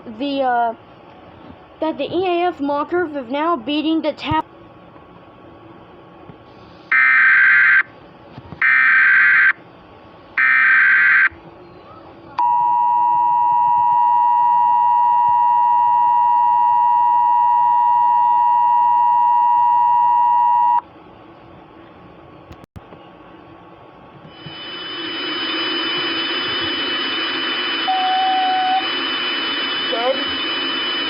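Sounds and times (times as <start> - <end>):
two-tone attention signal: 24.4 - 31.0.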